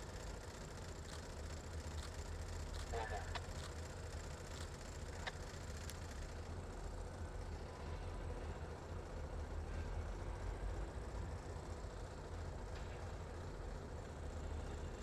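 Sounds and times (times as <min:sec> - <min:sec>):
diesel locomotive engine idling: 0:00.0 - 0:15.0.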